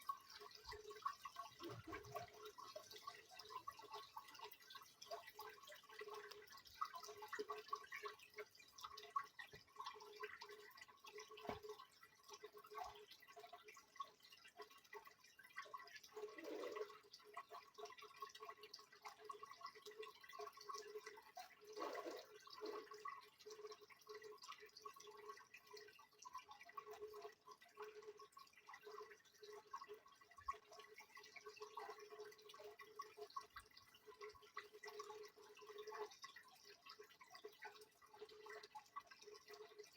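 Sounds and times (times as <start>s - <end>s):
water sloshing in washing machine: 0.2s - 4.6s, 21.6s - 23.0s.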